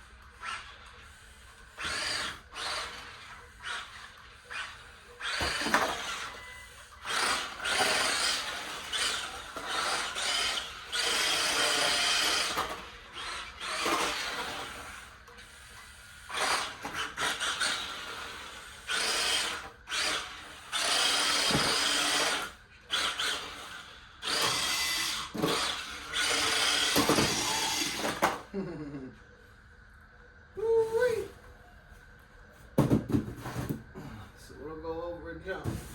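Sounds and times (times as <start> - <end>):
small electric motor whirring: 0.0 - 28.5.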